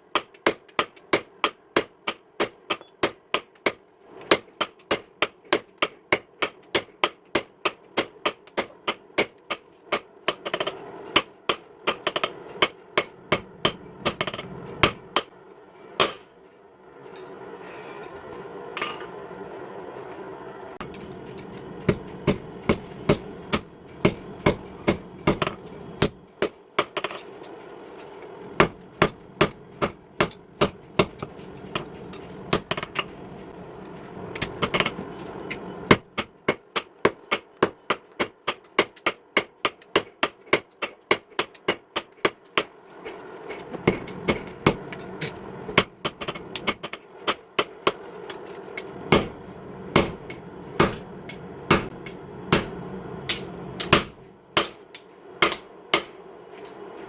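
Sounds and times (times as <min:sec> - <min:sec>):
hammer striking steel on anvil: 0:00.1 - 0:15.3, 0:16.0 - 0:16.3, 0:20.9 - 0:27.2, 0:28.6 - 0:33.1, 0:49.1 - 0:56.2
steady low hum: 0:06.0 - 0:57.0.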